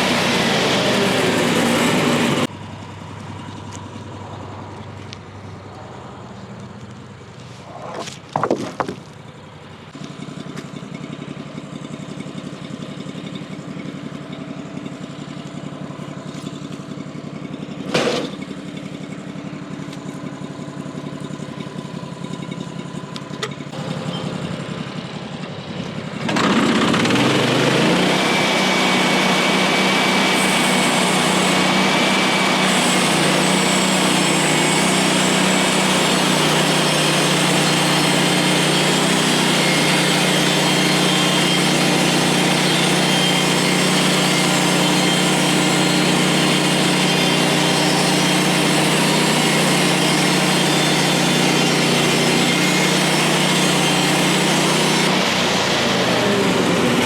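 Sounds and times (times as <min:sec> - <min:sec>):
band saw cutting log: 0:00.0 - 0:02.5, 0:07.4 - 0:09.2, 0:12.0 - 0:22.0, 0:26.2 - 0:57.0
sawmill gas engine revving: 0:00.0 - 0:03.5, 0:09.8 - 0:57.0.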